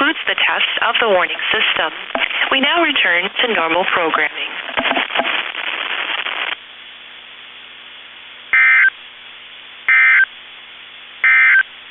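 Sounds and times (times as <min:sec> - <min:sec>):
faint radio hiss: 0:00.0 - 0:11.9
loud static: 0:00.0 - 0:11.9
digital data tone bursts: 0:08.6 - 0:08.9, 0:11.2 - 0:11.6.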